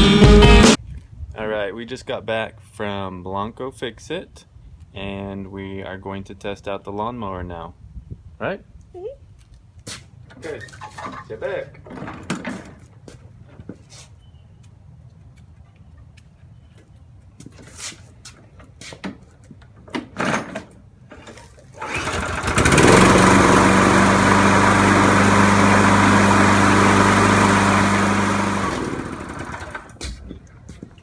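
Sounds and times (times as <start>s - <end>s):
lawnmower engine running: 21.8s - 30.0s.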